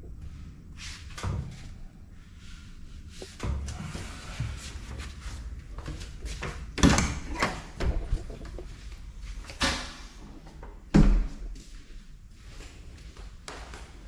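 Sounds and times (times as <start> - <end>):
low rumble: 1.5 - 9.4
knocks and thumps: 6.4 - 8.7.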